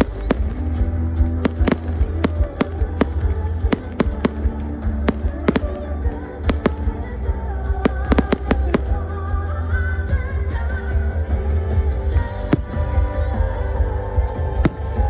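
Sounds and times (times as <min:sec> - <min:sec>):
music playing: 0:00.0 - 0:15.0
fireworks banging: 0:01.3 - 0:05.8.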